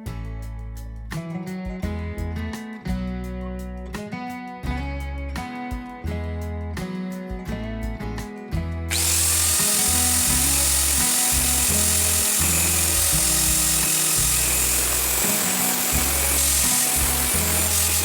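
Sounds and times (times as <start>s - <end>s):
background music with bass line: 0.0s - 18.0s
angle grinder grinding steel: 8.9s - 18.0s.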